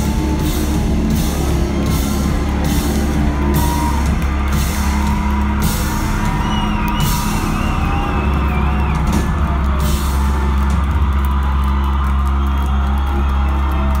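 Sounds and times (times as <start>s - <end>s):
drums with cymbal crashes: 0.0s - 10.8s.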